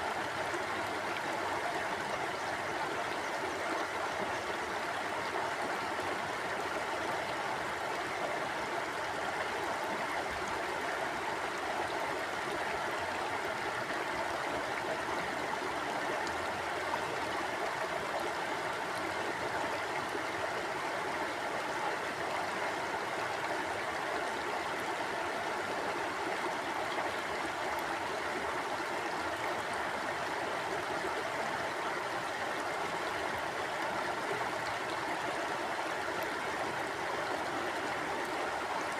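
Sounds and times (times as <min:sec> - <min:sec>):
stream rushing over rocks: 0:00.0 - 0:38.9.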